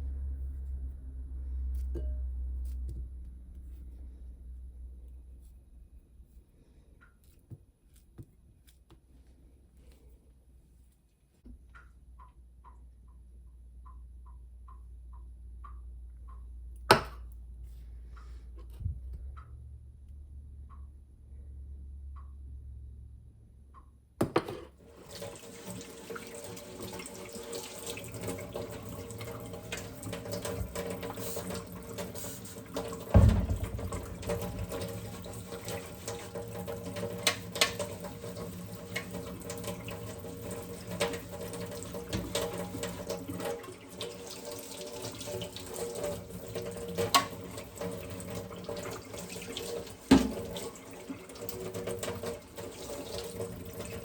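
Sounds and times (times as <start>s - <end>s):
tap water running into sink: 24.8s - 54.0s.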